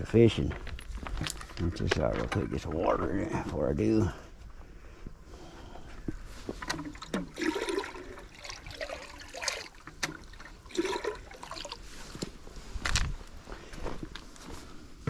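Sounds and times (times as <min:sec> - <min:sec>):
water splashing and pouring: 0:06.6 - 0:12.2.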